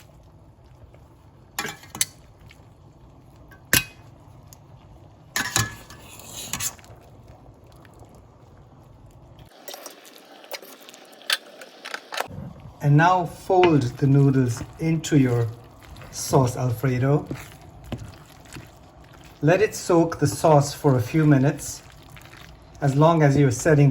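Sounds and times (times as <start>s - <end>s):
low steady hum: 0.0s - 9.8s, 11.2s - 23.9s
metal utensils clinking on pots: 1.6s - 2.2s, 3.5s - 4.1s, 5.4s - 6.8s.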